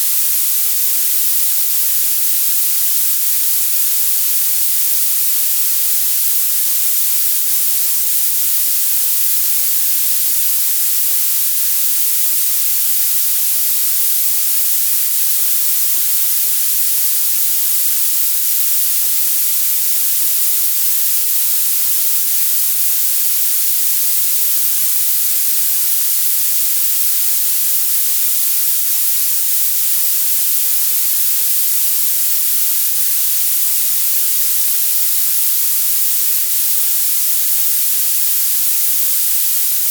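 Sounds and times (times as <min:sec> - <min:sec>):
bright high hiss: 0:00.0 - 0:39.9.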